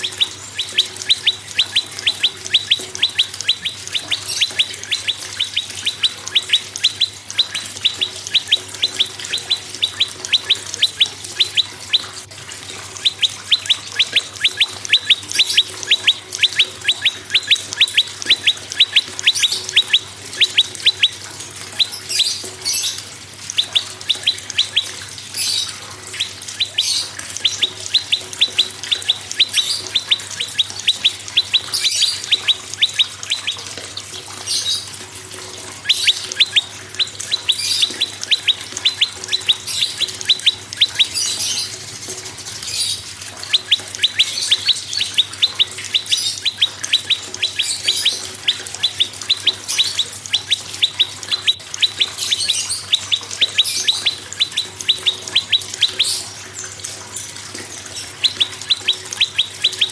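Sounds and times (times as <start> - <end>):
bird chirping: 0.0 - 59.9.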